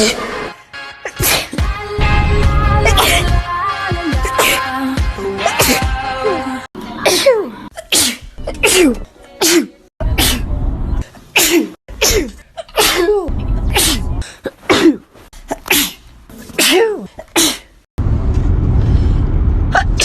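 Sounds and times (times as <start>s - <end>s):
person sneezing: 1.0s - 1.6s, 5.4s - 5.9s, 11.4s - 17.7s.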